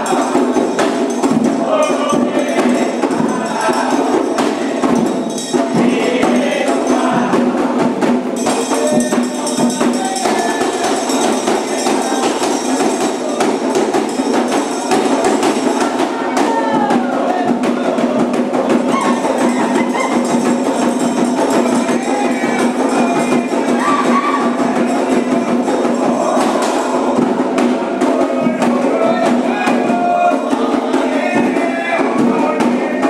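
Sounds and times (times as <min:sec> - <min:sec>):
hand drums drumming: 0:00.0 - 0:33.0
people singing: 0:00.0 - 0:33.0
struck metal bell: 0:08.4 - 0:15.8.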